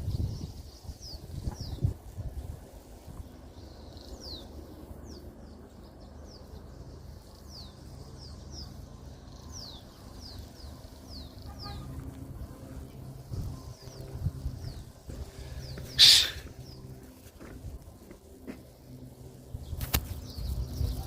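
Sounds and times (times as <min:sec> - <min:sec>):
birds chirping: 0:00.0 - 0:21.0
steady low rumble: 0:00.0 - 0:21.0.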